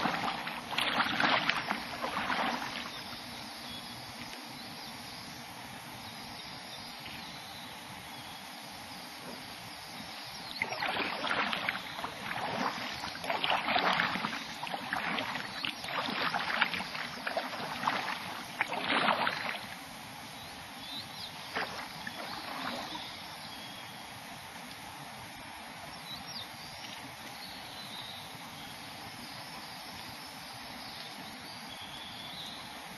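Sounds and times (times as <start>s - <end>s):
kayak paddle splashing: 0.0s - 3.3s, 9.3s - 20.1s, 21.4s - 23.3s
steady background hiss: 0.0s - 32.9s.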